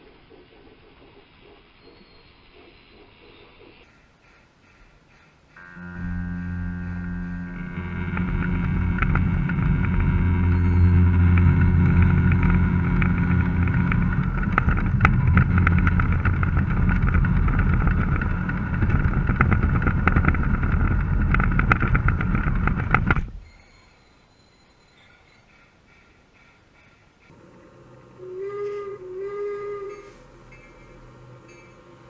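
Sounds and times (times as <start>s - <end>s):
model train motor hum: 5.6s - 23.4s, 27.3s - 32.0s.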